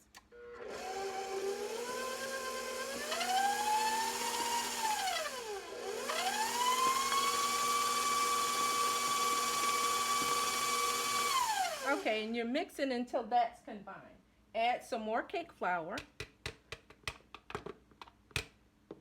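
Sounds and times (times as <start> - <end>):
stand mixer motor whining: 0.4 - 12.0.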